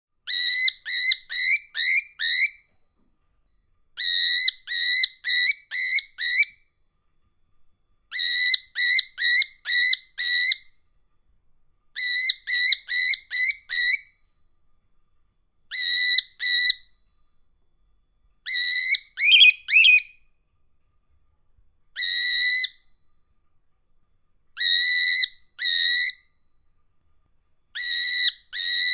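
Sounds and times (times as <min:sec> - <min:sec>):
cockatiel whistling: 0:00.3 - 0:02.6, 0:04.0 - 0:06.6, 0:12.0 - 0:14.1, 0:15.7 - 0:16.8, 0:18.5 - 0:20.2, 0:22.0 - 0:22.8, 0:24.6 - 0:26.2, 0:27.8 - 0:28.9.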